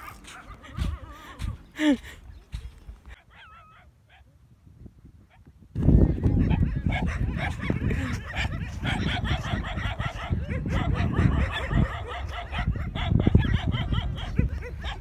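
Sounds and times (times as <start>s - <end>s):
dog barking aggressively: 6.3s - 15.0s.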